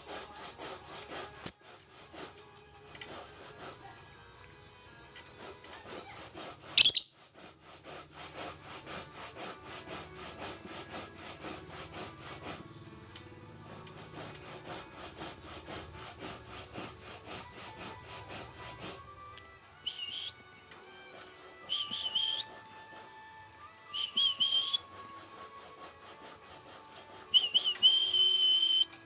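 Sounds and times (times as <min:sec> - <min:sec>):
bird shrieking: 0:06.8 - 0:07.2
lovebird chattering: 0:06.8 - 0:07.2.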